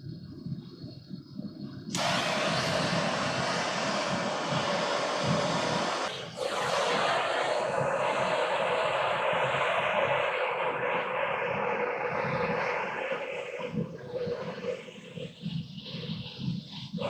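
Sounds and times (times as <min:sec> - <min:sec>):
low rumble: 0:01.9 - 0:08.0
burner flame rushing: 0:01.9 - 0:08.1.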